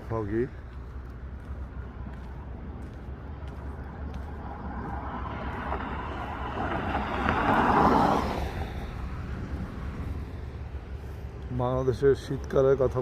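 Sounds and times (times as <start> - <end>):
steady low rumble: 0.0 - 13.0
car passing by: 3.4 - 11.2.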